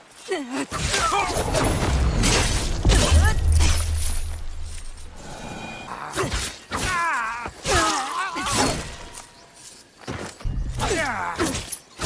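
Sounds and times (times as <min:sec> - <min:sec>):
metallic clashing and impacts: 0:00.8 - 0:06.7, 0:10.1 - 0:12.0.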